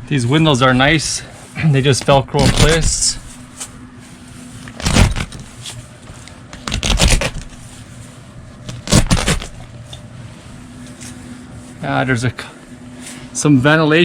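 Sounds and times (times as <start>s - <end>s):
velcro ripping: 2.4s - 3.4s, 4.6s - 5.8s, 6.6s - 7.8s, 8.6s - 9.7s.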